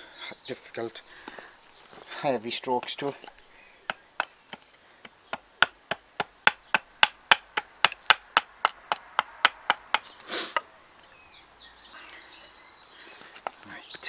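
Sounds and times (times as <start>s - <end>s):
axe chopping wood: 2.8s - 10.2s.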